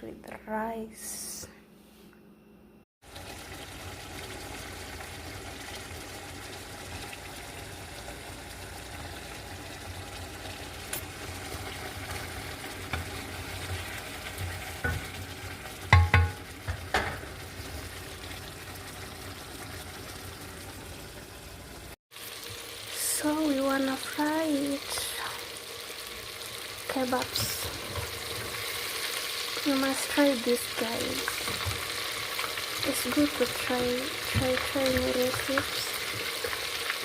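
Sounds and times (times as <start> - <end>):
kebabs sizzling in oil: 3.0 - 37.0
utensil knocking on pan: 15.9 - 17.3.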